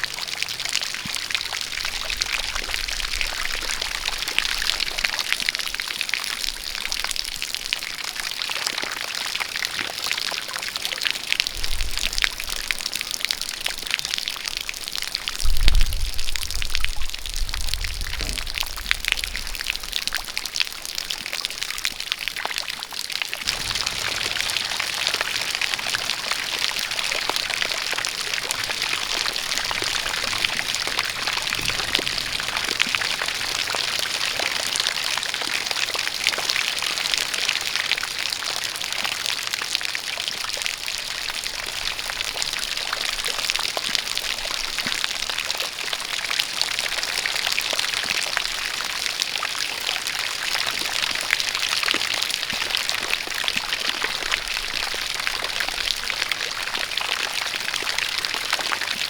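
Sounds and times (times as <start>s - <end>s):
rain falling: 0.0s - 59.0s
jet of water pouring: 23.4s - 38.2s.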